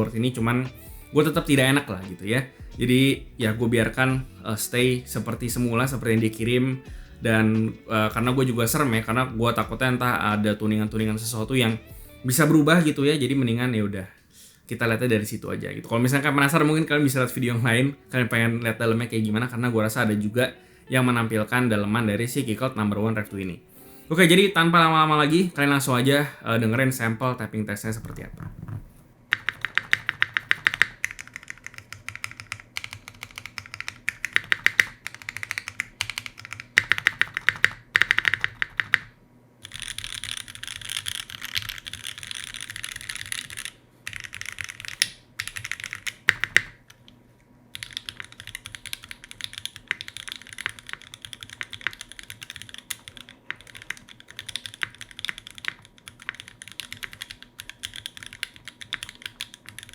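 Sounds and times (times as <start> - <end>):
mechanical keyboard typing: 29.3 - 47.0, 47.7 - 59.9.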